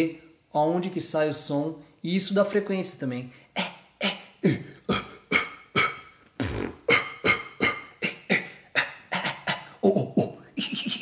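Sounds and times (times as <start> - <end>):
beatboxer cough snare: 4.5 - 9.7, 10.6 - 11.0.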